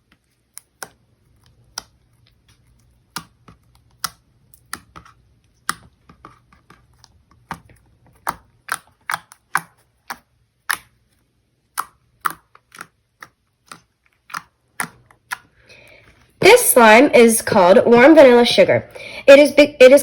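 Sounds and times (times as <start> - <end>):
slime clicking and popping: 0.4 - 6.0, 7.4 - 11.0, 11.7 - 15.6.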